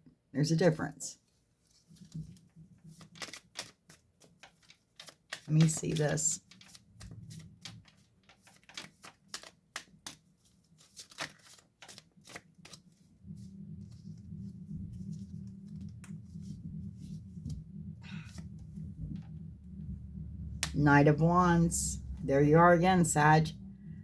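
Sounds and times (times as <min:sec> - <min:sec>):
cards being shuffled: 0:02.0 - 0:13.1
steady low hum: 0:13.0 - 0:24.0.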